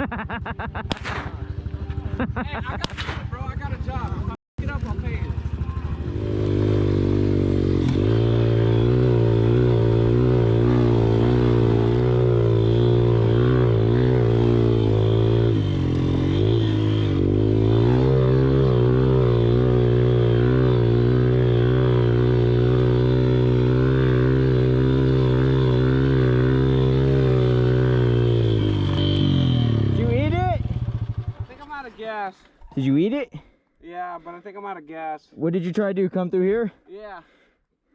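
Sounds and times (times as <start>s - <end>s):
small motorcycle engine running: 3.5s - 31.7s.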